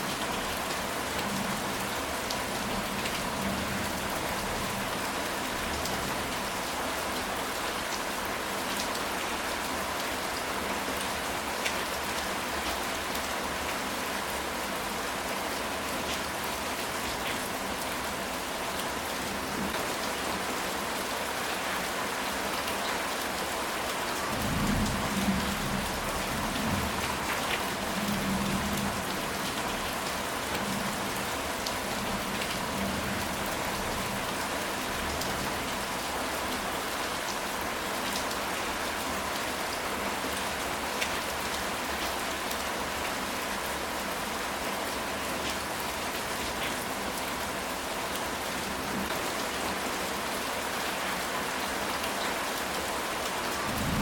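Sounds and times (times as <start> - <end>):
rain on a tile roof: 0.0 - 54.0
low rumble of thunder: 53.7 - 54.0.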